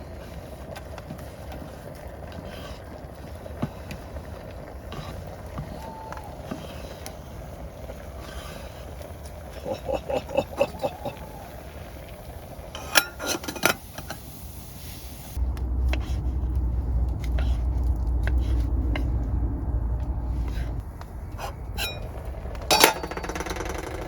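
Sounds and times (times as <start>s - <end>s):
cooking pot and utensils clinking: 12.6s - 14.3s, 21.4s - 24.0s
utensils clattering: 12.8s - 14.3s, 21.4s - 24.0s
low rumble: 14.7s - 24.0s.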